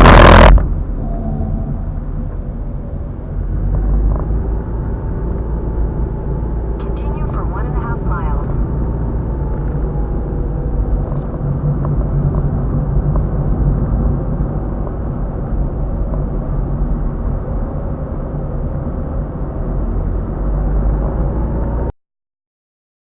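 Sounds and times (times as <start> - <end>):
faint whine: 0.0 - 13.5
car tyre and engine rumble: 0.0 - 21.9.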